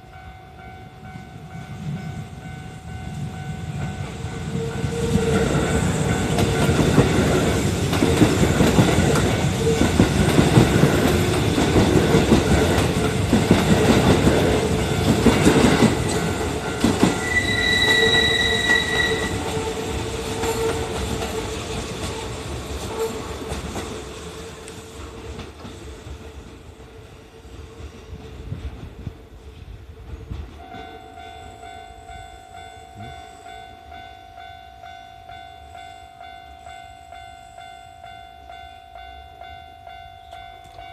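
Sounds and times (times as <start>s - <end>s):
train wheels clattering over rail joints: 4.8s - 24.1s.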